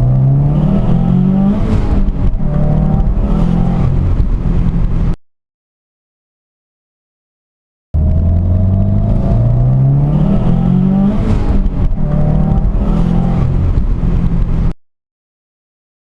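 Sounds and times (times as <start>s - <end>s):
turbo engine revving: 0.0s - 5.2s, 8.0s - 14.7s.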